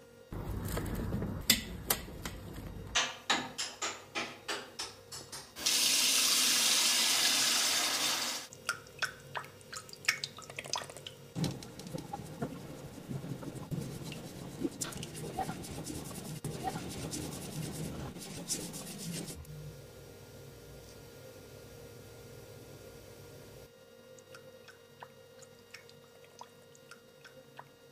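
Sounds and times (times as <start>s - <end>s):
tap water running: 5.6s - 16.1s.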